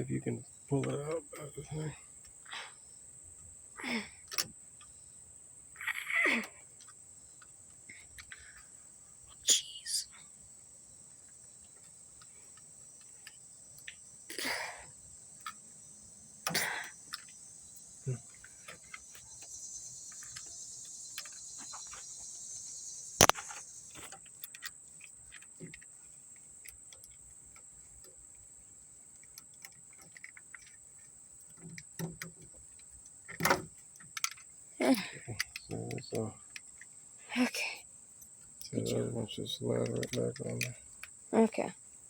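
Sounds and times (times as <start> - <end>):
crickets chirping: 0.0 - 42.0
sharp loud click: 23.2 - 23.6.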